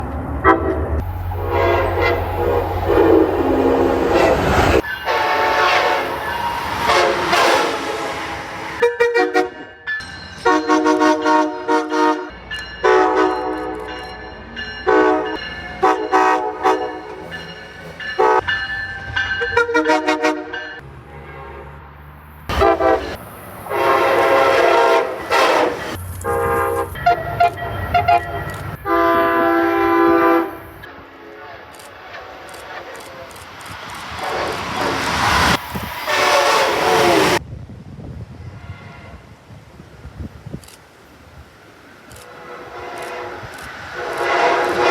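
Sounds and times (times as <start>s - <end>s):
low train rumble: 0.0s - 44.9s
locomotive air horn blasts: 0.4s - 9.8s, 10.4s - 13.8s, 14.9s - 17.4s, 18.2s - 18.4s, 19.5s - 21.8s, 22.5s - 32.8s, 36.0s - 37.4s, 42.2s - 44.9s.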